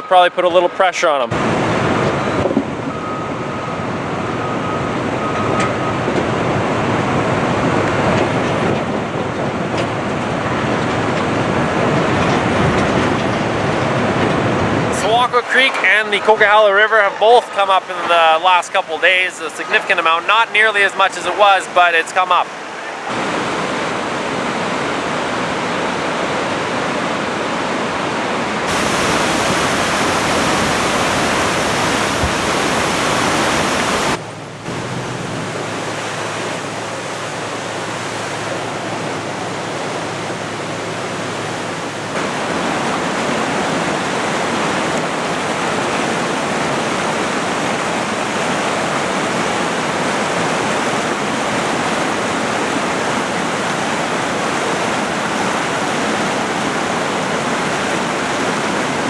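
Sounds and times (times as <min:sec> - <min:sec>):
faint low hum: 0:28.7 - 0:34.2
river rushing: 0:28.7 - 0:34.2.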